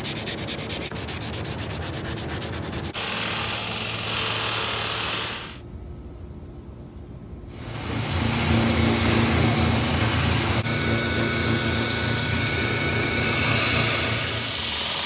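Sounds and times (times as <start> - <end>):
workshop machine whirring: 7.6 - 15.0.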